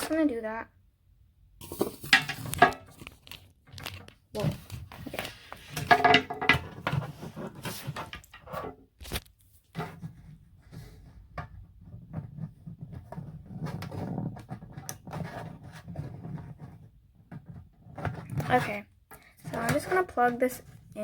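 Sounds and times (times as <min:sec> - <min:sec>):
soft rubbing and rustling: 0:06.8 - 0:11.2.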